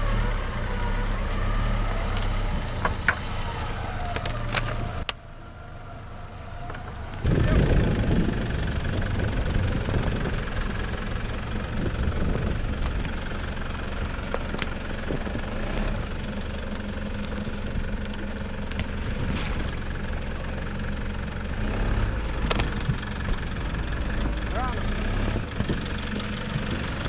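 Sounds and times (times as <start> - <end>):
engine running at low revs: 0.0 - 27.0.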